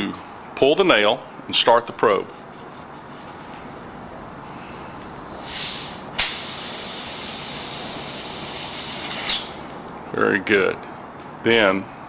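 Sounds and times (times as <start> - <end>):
air hissing from tire: 4.7 - 9.8.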